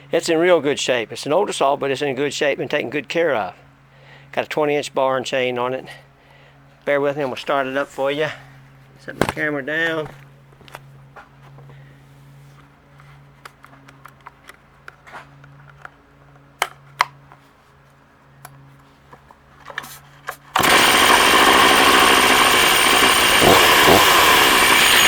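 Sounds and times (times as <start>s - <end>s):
chainsaw running: 9.2s - 10.2s, 20.4s - 25.0s.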